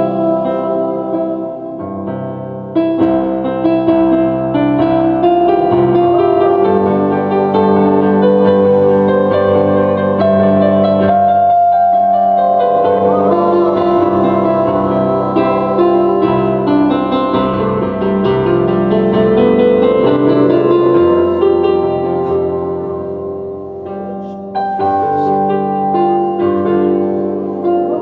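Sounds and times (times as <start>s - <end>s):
keyboard playing sustained chords: 0.0s - 28.0s.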